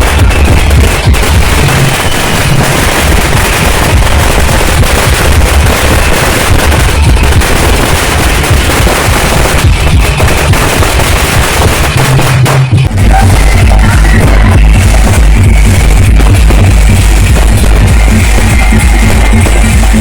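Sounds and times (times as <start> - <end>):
firecrackers crackling: 0.0 - 20.0.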